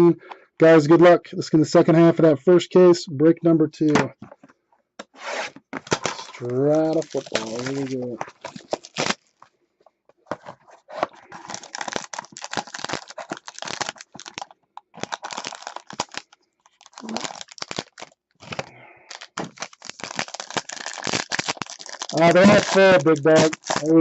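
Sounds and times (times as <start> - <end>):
packaging tearing: 5.3 - 9.4, 11.0 - 24.0
plastic wrap crinkling: 5.8 - 9.4, 10.8 - 24.0.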